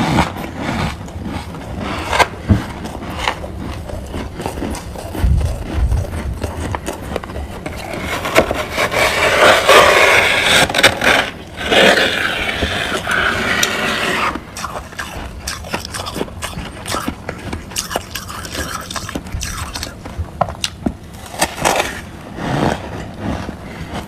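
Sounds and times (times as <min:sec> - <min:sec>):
frost being scraped and crunched: 0:00.0 - 0:20.1, 0:21.1 - 0:24.0.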